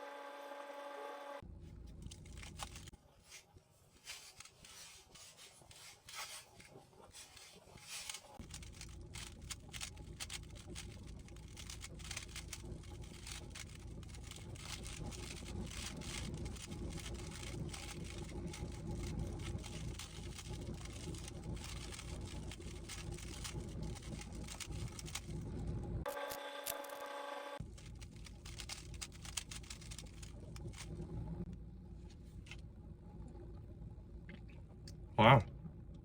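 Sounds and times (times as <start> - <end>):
low steady hum: 0.0 - 36.0
puzzle cube plastic clicks: 7.2 - 25.4, 27.6 - 30.9.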